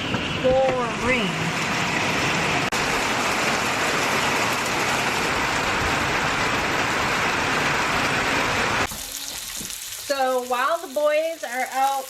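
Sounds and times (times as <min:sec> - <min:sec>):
heavy rain pouring: 0:00.0 - 0:12.0.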